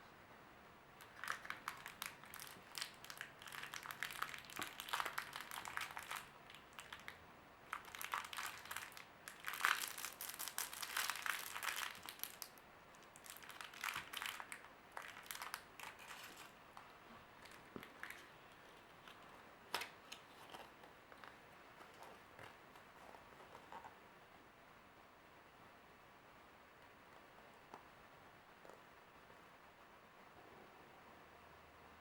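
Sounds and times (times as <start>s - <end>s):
wrapper crinkling: 1.0s - 23.8s.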